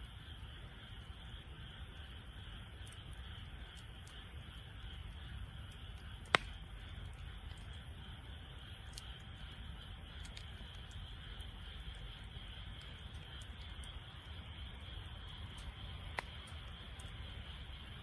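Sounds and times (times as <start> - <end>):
fire popping: 2.8 - 18.0
wood fire crackling: 5.3 - 18.0.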